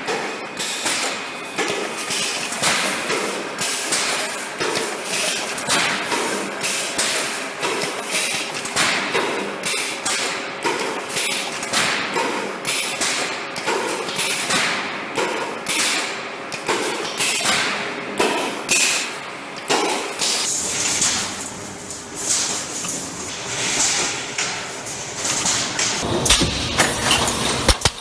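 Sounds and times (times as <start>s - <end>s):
steady machine noise: 0.0s - 20.6s.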